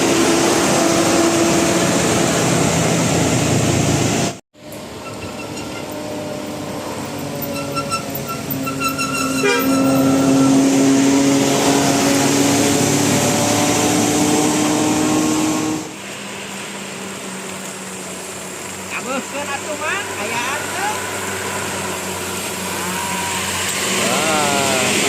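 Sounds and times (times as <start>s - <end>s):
bus horn playing notes: 7.5s - 11.0s.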